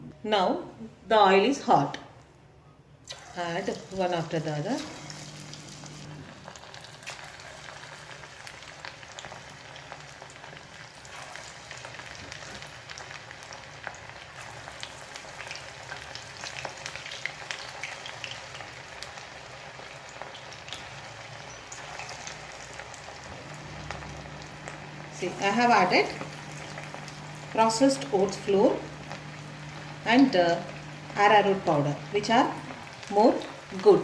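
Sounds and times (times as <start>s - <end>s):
chicken deep-frying in oil: 3.1s - 34.0s.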